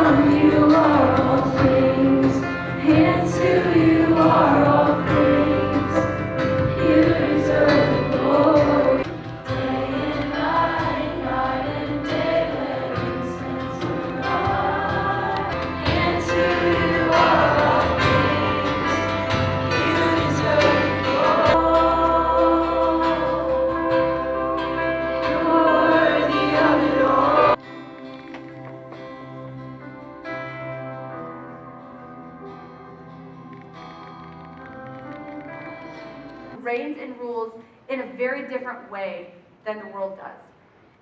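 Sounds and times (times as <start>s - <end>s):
group of voices singing: 0.0s - 27.6s
band playing worship music: 0.0s - 36.6s.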